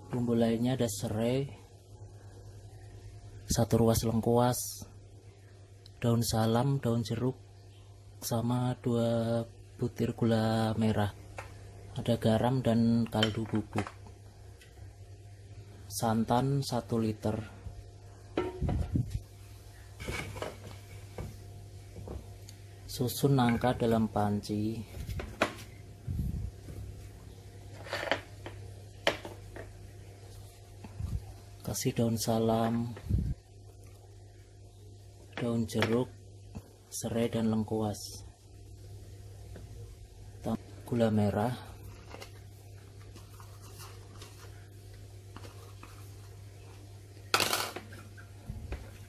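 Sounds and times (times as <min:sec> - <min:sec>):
steady low hum: 0:00.0 - 0:49.0
food thudding into a pot: 0:18.4 - 0:18.9.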